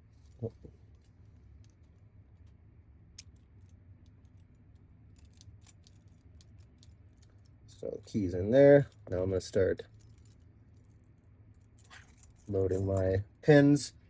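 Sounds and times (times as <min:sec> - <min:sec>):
small metallic clicks of lock parts: 0:03.2 - 0:07.6.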